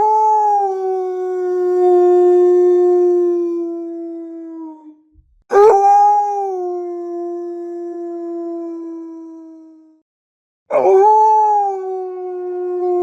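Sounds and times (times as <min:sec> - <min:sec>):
wolf howling: 0:05.5 - 0:09.8, 0:10.7 - 0:13.0.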